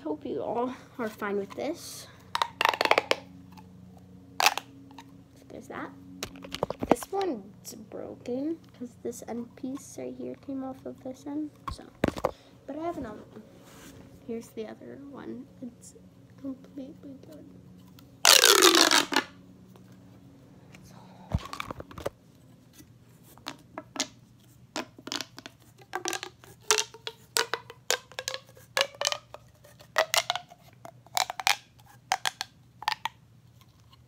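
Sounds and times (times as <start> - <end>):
fidget toy falling zip: 18.2 - 19.4.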